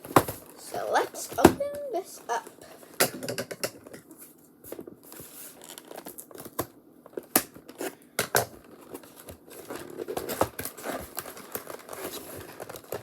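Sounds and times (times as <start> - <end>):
packaging crinkling: 5.5 - 7.8, 8.6 - 13.0.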